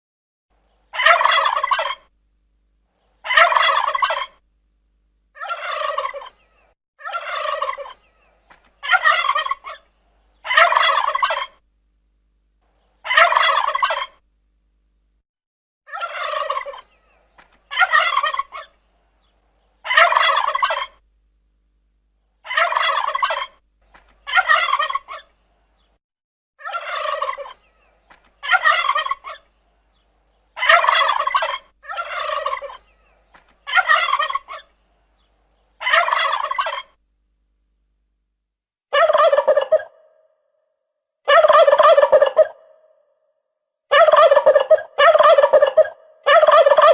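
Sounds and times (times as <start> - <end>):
turkey gobbling: 0.9 - 2.1, 3.2 - 4.4, 5.4 - 11.6, 13.0 - 14.2, 15.9 - 18.8, 19.8 - 21.0, 22.4 - 23.6, 24.2 - 25.3, 26.6 - 29.5, 30.6 - 34.7, 35.8 - 37.0, 38.9 - 40.3, 41.3 - 43.0, 43.9 - 46.9.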